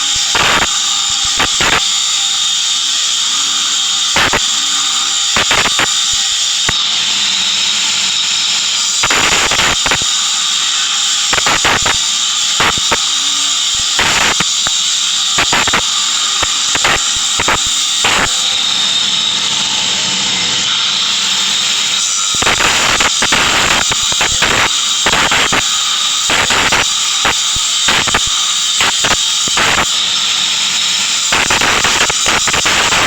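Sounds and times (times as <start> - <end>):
welding arc hissing: 0.0 - 33.0
spatter crackling and popping: 11.0 - 18.4.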